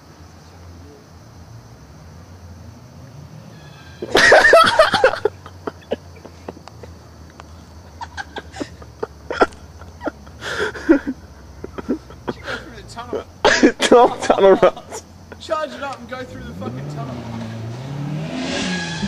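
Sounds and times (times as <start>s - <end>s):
car engine running: 14.2s - 19.0s.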